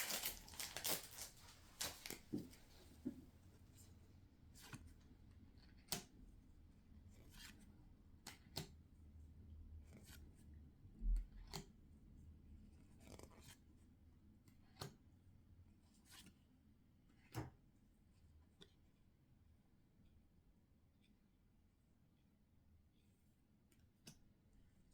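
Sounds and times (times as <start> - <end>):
trading cards rustling and clicking: 0.0 - 3.1.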